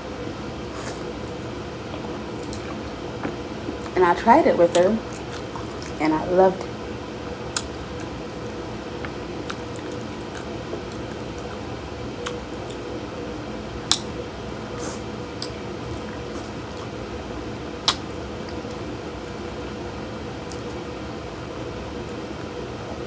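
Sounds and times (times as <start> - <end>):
steady low hum: 0.0 - 23.0
wet squishy eating sounds: 0.6 - 4.0, 4.7 - 6.0, 7.1 - 13.0, 20.4 - 21.5.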